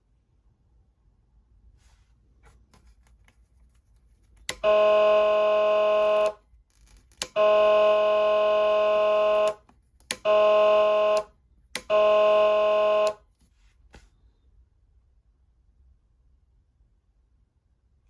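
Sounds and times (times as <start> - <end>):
buzzy siren tone: 4.6 - 6.4, 11.9 - 13.2.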